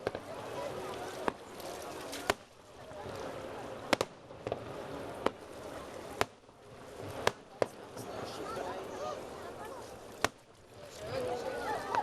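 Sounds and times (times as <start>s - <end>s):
fireworks bangs echoing: 0.0s - 8.3s
crowd murmuring: 0.0s - 12.0s.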